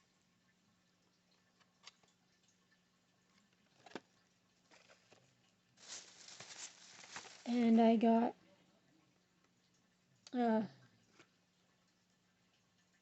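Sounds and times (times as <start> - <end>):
faint clicks and taps: 1.4 - 7.5.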